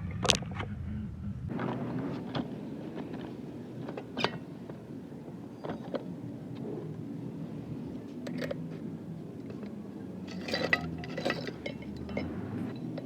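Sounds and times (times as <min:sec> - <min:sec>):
low steady hum: 0:00.6 - 0:13.0
metal clicks and knocks: 0:01.5 - 0:13.0.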